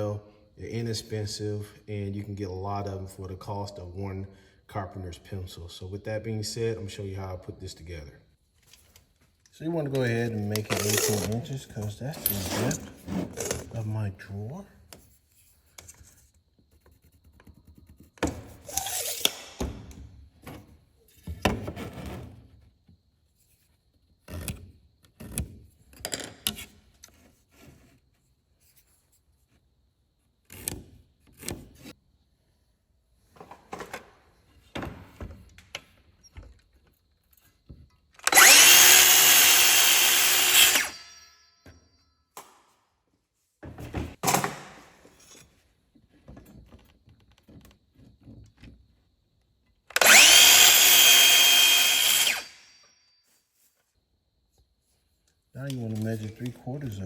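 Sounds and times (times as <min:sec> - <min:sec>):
circular saw cutting wood: 0:10.6 - 0:11.6, 0:18.6 - 0:19.6, 0:38.2 - 0:41.4, 0:49.9 - 0:52.9.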